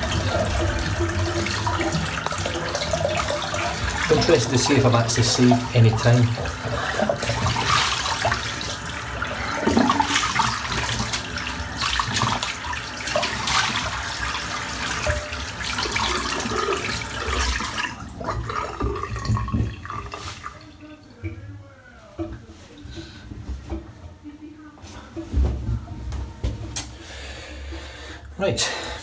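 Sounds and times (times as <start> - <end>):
water splashing: 0.0 - 21.4
tap water running into sink: 0.0 - 24.0.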